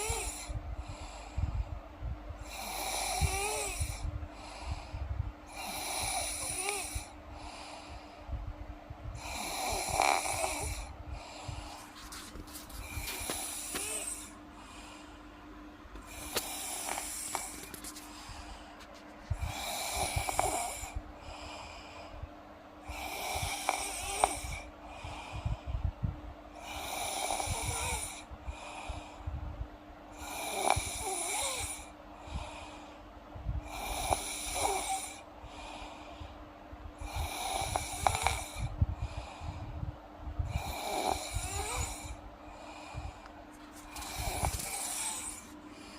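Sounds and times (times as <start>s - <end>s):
girl snoring: 0.0s - 0.5s, 2.4s - 4.0s, 5.5s - 7.1s, 9.2s - 10.9s, 12.8s - 14.4s, 16.1s - 17.7s, 19.4s - 21.0s, 22.8s - 24.7s, 26.6s - 28.3s, 30.2s - 31.9s, 33.6s - 35.7s, 37.0s - 38.7s, 40.4s - 42.2s, 43.9s - 45.5s.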